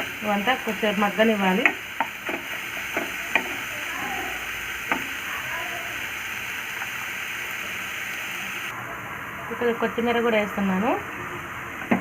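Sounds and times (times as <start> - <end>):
masala sizzling in oil: 0.0 - 8.8.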